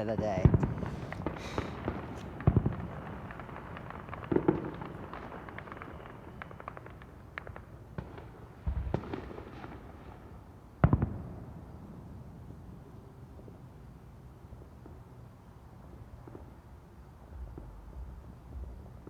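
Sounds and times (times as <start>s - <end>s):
fireworks crackling pops: 0.0s - 11.8s, 16.0s - 16.7s, 17.3s - 19.0s
fireworks booming: 0.0s - 12.0s, 17.3s - 19.0s.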